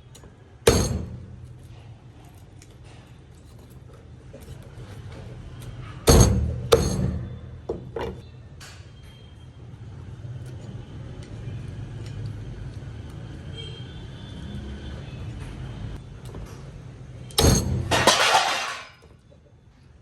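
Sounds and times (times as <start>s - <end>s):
dishes and utensils clinking: 17.4s - 19.1s.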